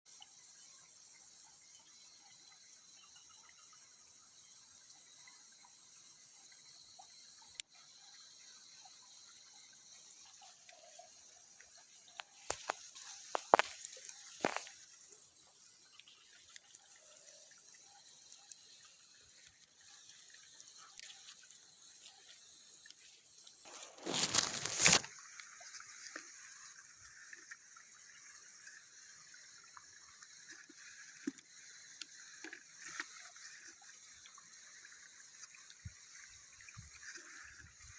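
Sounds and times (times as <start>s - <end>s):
insects shrilling: 12.2s - 14.7s, 23.7s - 25.1s.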